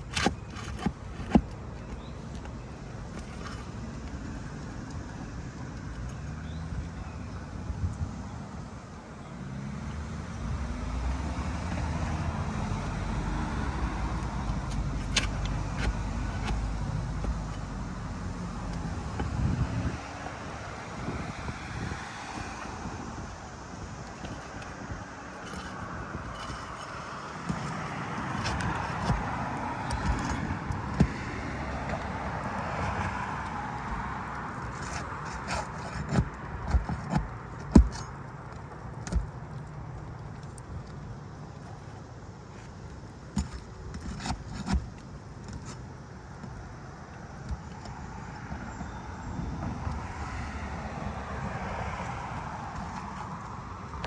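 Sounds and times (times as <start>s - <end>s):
roof shingles scraping and knocking: 0.0s - 4.4s, 11.5s - 46.7s, 51.8s - 54.0s
passing traffic: 0.0s - 54.0s.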